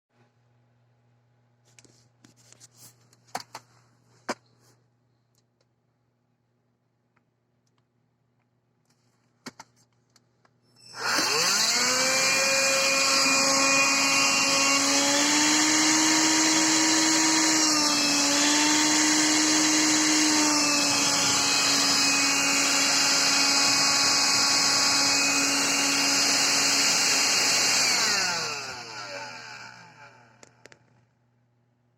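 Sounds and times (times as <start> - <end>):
vacuum motor whining and hissing: 10.8 - 30.4.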